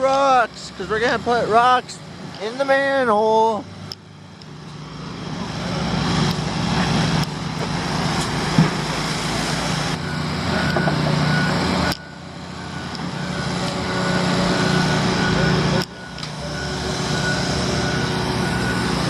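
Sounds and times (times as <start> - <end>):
heavy diesel machinery engine: 0.0 - 19.0
faint backup alarm beeping: 9.9 - 19.0.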